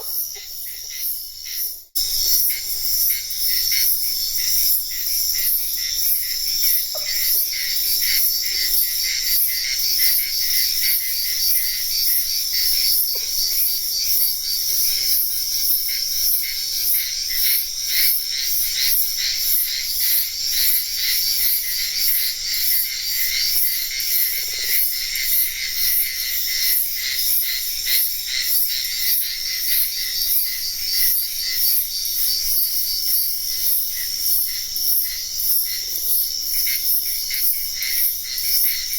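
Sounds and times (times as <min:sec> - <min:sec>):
pulsing insect chorus: 0:00.0 - 0:38.9.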